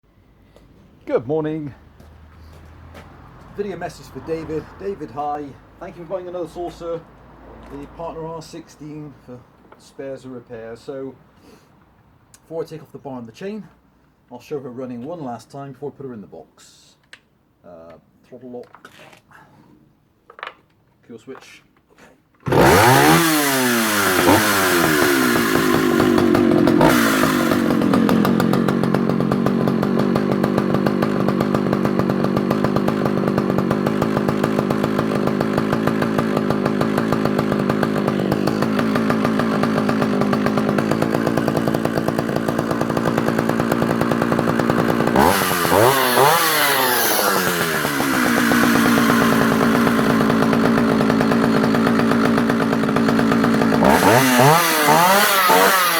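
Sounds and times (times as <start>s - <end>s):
chainsaw engine idling and revving: 1.7s - 8.9s, 22.4s - 55.9s.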